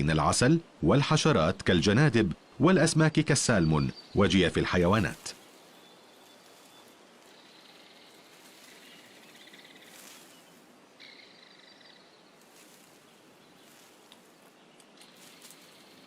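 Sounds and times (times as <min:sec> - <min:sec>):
steady outdoor hiss: 0:00.0 - 0:16.0.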